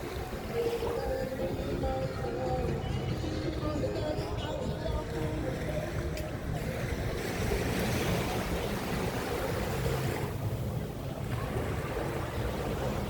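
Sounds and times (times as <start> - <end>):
wind rumbling on microphone: 0.0 - 13.0
small waves washing onto sand: 5.0 - 13.0.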